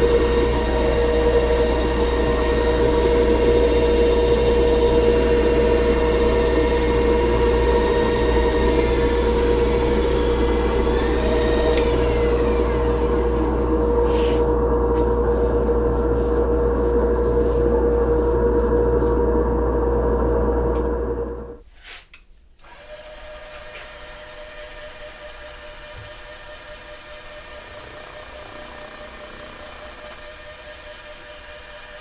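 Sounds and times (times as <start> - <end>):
power tool motor humming: 0.0 - 21.6, 22.6 - 32.0.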